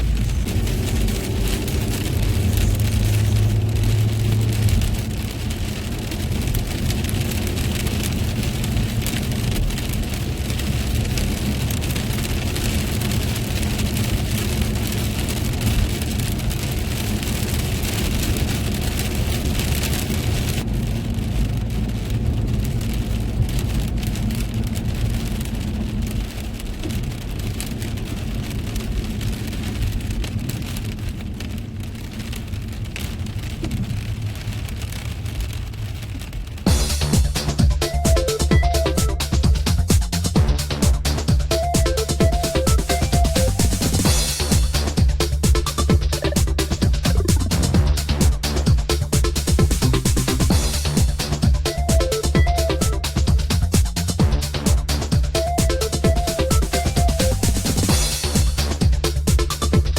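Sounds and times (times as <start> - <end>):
car running on wet road: 0.0 - 59.9
rain pattering on a car: 0.0 - 59.9.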